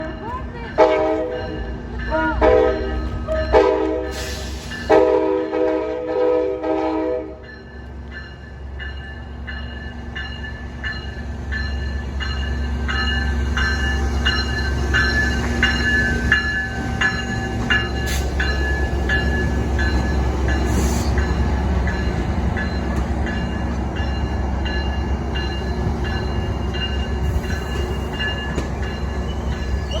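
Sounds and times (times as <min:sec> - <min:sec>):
train rolling by with deep rumble: 0:00.0 - 0:30.0
train horn chord: 0:02.1 - 0:04.3, 0:04.9 - 0:07.4.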